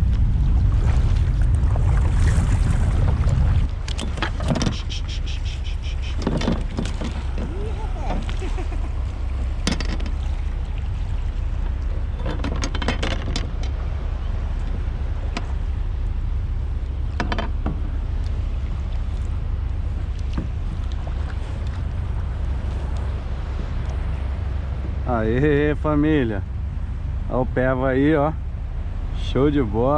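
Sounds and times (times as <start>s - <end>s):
wind and water rumble: 0.0s - 29.9s
short knocks: 6.1s - 8.3s.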